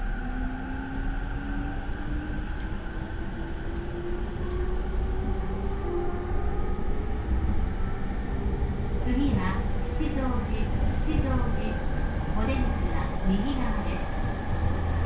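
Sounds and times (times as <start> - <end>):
wheels rumbling on rail: 0.0 - 15.0.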